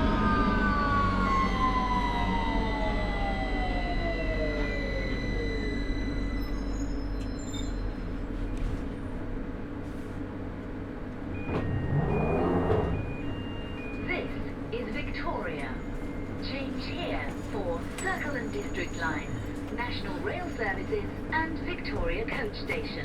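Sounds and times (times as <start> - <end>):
low running rumble: 0.0 - 7.2, 10.9 - 17.7
train motors whining down: 0.0 - 8.0, 11.4 - 13.8
train doors sliding open: 11.1 - 13.7
door chime beeping: 11.4 - 14.5.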